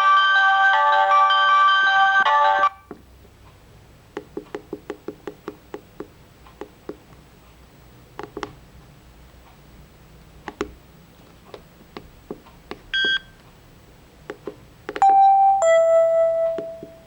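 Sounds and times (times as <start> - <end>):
mobile phone ringtone melody: 0.0 - 2.8, 15.0 - 17.0.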